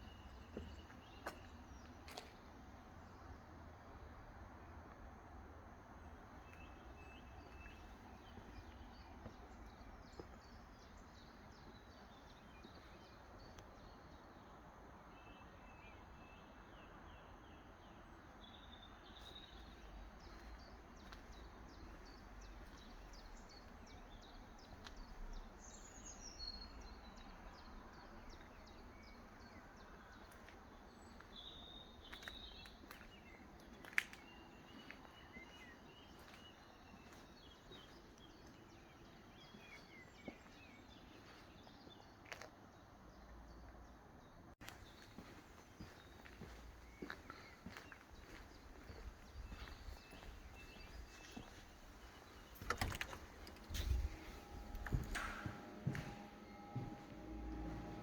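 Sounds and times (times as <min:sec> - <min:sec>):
birds chirping: 0:15.2 - 0:42.2, 0:44.6 - 0:58.0.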